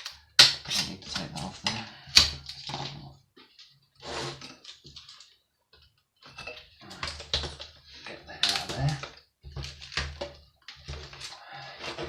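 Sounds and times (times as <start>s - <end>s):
plastic scraping: 6.9s - 12.0s.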